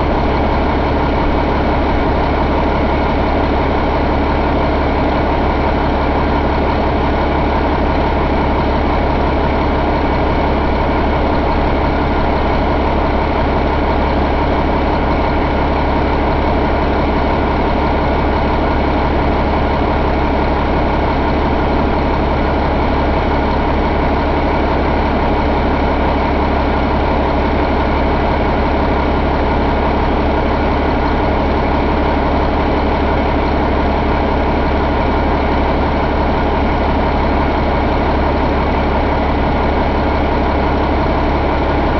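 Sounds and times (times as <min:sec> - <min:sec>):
diesel engine idling: 0:00.0 - 0:41.9.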